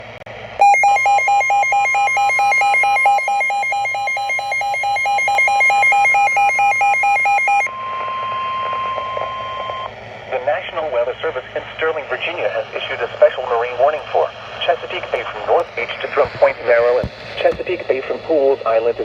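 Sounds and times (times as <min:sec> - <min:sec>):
steady warning alarm tone: 0:00.6 - 0:09.9
two-pitch electronic alert siren: 0:00.6 - 0:09.9.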